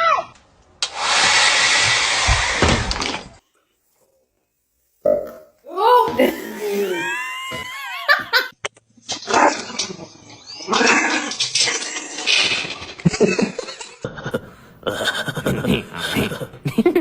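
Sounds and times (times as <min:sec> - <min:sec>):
dog barking and growling: 0:09.2 - 0:12.8.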